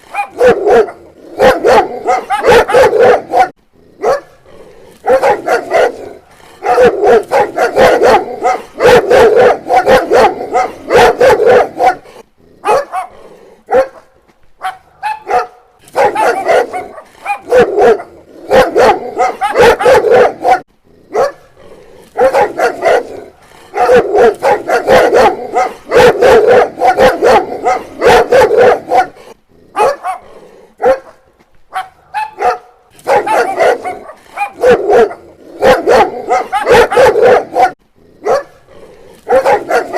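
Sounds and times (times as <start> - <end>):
dog barking loudly: 0.0 - 4.4, 5.0 - 21.6, 22.2 - 39.9.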